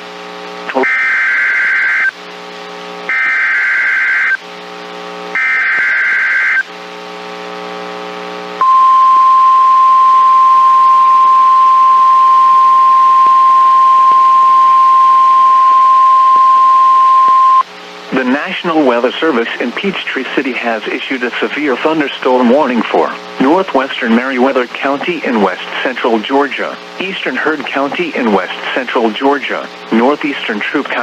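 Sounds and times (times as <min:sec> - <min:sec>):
buzzing hum: 0:00.0 - 0:18.4
steady warning alarm tone: 0:08.6 - 0:17.6.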